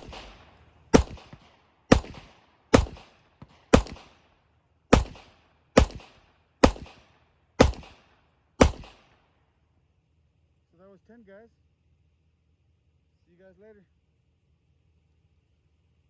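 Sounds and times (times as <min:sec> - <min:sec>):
pistol shots: 0:00.0 - 0:04.2, 0:04.9 - 0:09.2.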